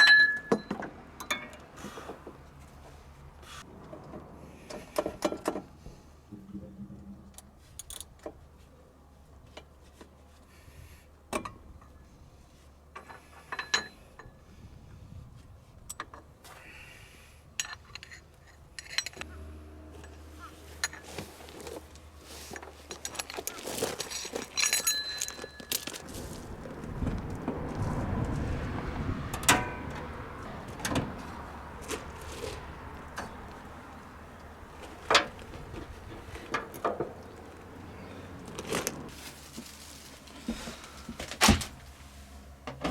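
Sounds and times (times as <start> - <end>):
metal tools clinking and clattering: 0.0 - 1.6, 17.6 - 19.2, 20.0 - 26.9.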